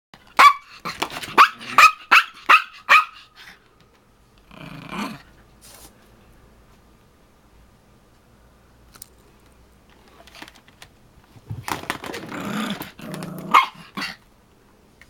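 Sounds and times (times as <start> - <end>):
dog barking sharply: 0.4 - 3.3, 13.5 - 14.2
dog growling: 4.4 - 5.3, 12.2 - 14.2.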